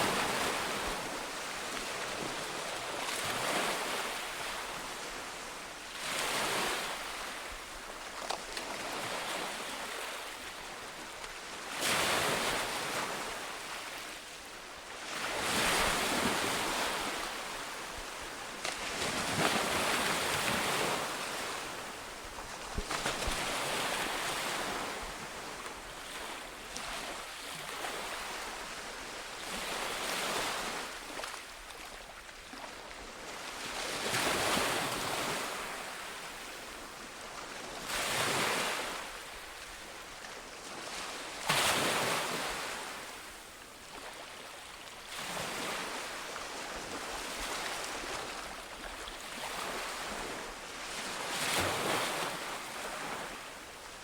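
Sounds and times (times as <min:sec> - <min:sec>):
ocean waves breaking on beach: 0:00.0 - 0:08.1, 0:14.8 - 0:31.5.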